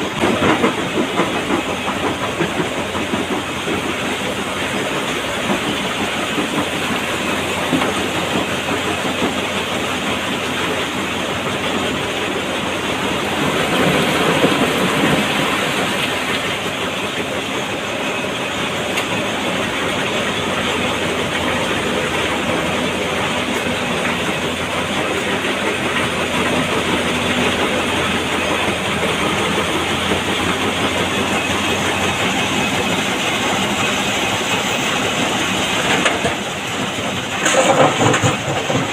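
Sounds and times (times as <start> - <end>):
stone crusher clattering: 35.8 - 38.9.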